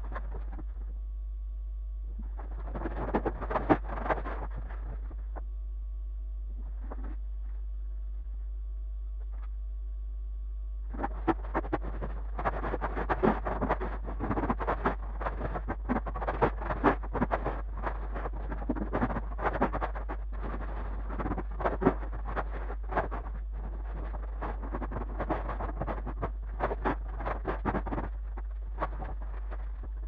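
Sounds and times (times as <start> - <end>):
steady low hum: 0.0 - 30.0
rapid knocks clicks and scrapes: 2.2 - 5.4, 10.9 - 30.0.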